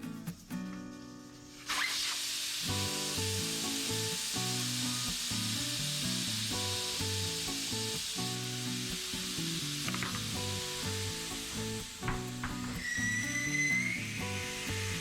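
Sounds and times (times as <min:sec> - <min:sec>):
compressed air hissing: 0:01.2 - 0:15.0.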